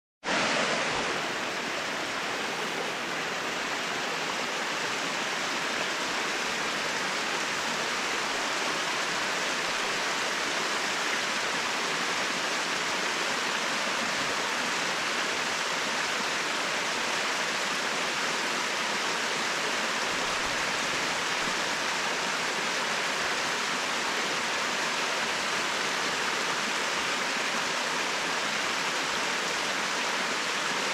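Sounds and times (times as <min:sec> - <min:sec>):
waterfall splashing: 0:00.2 - 0:30.9.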